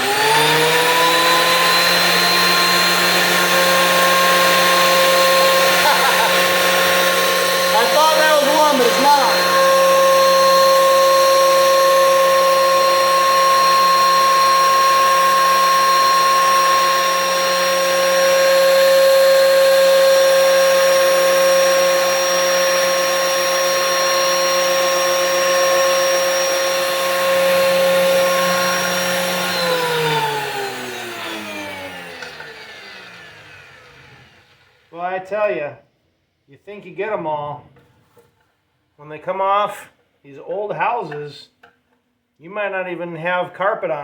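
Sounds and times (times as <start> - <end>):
planer spinning down: 0.0 - 34.9
thickness planer motor whine: 0.0 - 34.9.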